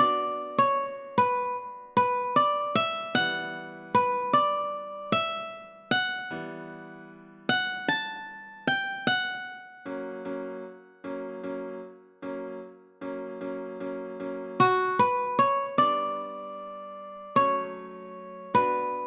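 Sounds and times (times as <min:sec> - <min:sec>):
ukulele melody: 0:00.0 - 0:10.6, 0:14.6 - 0:19.0
keyboard chords: 0:00.0 - 0:19.0.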